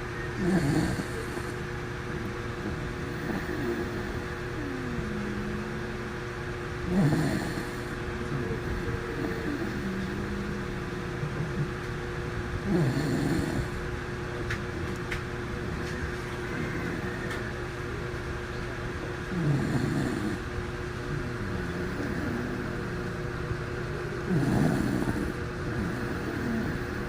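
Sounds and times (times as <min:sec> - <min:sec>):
dog snoring: 0:00.0 - 0:11.9, 0:12.6 - 0:14.0, 0:15.6 - 0:17.6, 0:19.2 - 0:23.2, 0:24.2 - 0:27.0
steady background hum: 0:00.0 - 0:27.0
dog breathing: 0:00.4 - 0:14.0, 0:19.2 - 0:23.1, 0:24.2 - 0:27.0.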